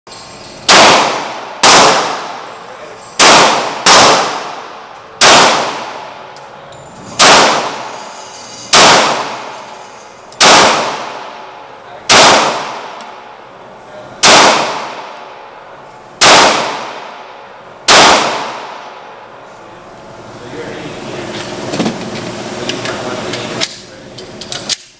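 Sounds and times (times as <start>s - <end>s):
pistol shots ringing out: 0.6s - 2.6s, 3.2s - 6.4s, 7.2s - 8.0s, 8.7s - 9.6s, 10.4s - 13.2s, 14.2s - 15.4s, 16.2s - 19.0s.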